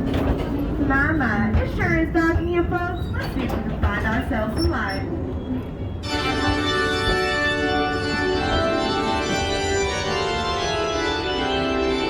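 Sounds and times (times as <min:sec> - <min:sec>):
organ playing sustained chords: 0:06.0 - 0:12.0.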